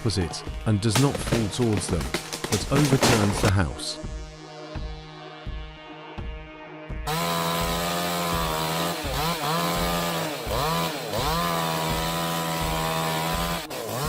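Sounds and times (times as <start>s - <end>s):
chainsaw cutting wood: 0.5s - 3.6s, 7.1s - 14.0s.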